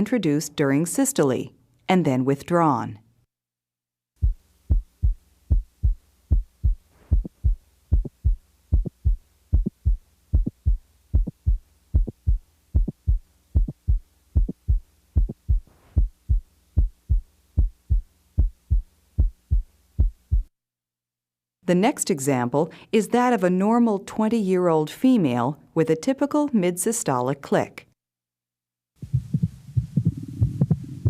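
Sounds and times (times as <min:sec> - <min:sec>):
faint steady hum: 0:04.2 - 0:20.5, 0:29.0 - 0:31.0
heartbeat lub-dub: 0:04.2 - 0:20.5, 0:29.0 - 0:31.0
high-pitched heart click: 0:04.2 - 0:20.5, 0:29.0 - 0:31.0.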